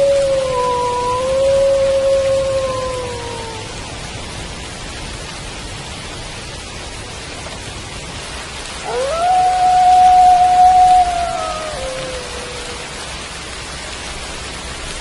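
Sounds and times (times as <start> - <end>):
wolf howling: 0.0 - 3.8, 8.8 - 13.2
steady rain: 0.0 - 15.0.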